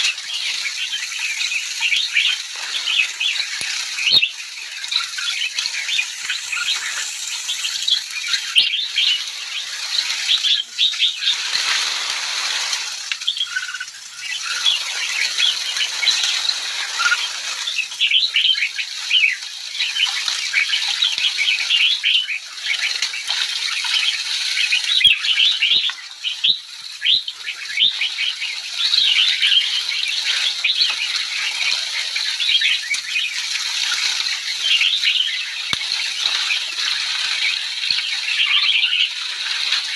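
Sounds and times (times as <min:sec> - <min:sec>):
flock of birds chirping: 0:00.0 - 0:39.9.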